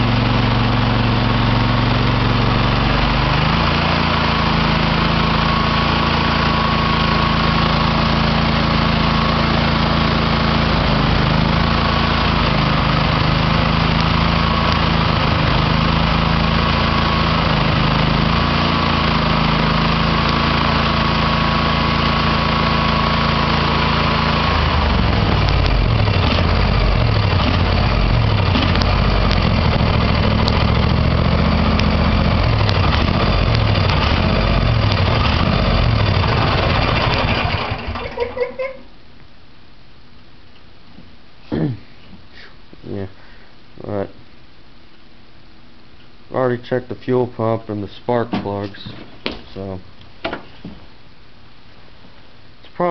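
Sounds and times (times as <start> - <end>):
small engine idling unevenly: 0.0 - 38.4.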